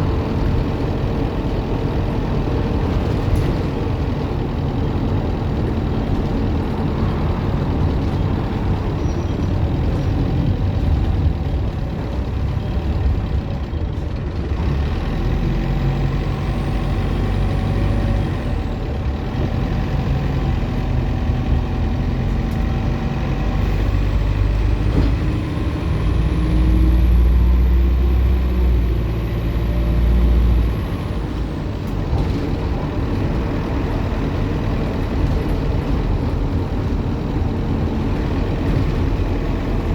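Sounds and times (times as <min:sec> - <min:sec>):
bus engine running: 0:00.0 - 0:39.9.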